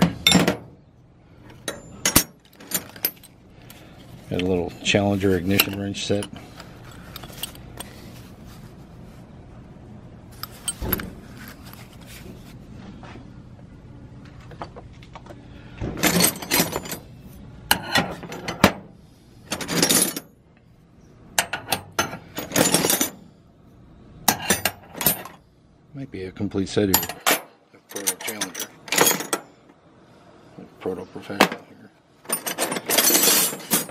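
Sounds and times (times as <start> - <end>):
wrenches clinking together: 1.5 - 8.0, 10.4 - 11.8, 16.0 - 17.1, 19.5 - 20.3, 26.9 - 29.5, 31.4 - 33.9.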